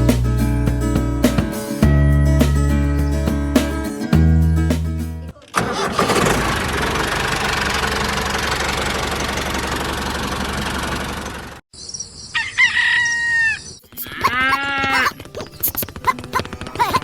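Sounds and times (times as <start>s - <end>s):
engine running with low hum: 5.6s - 11.6s
rooster crowing: 12.4s - 15.1s.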